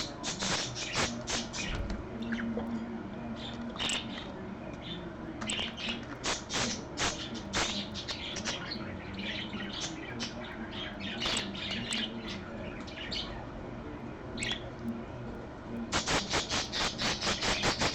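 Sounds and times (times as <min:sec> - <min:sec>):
budgerigar chattering: 0:00.0 - 0:02.5, 0:03.8 - 0:04.3, 0:05.4 - 0:13.3, 0:15.9 - 0:17.9.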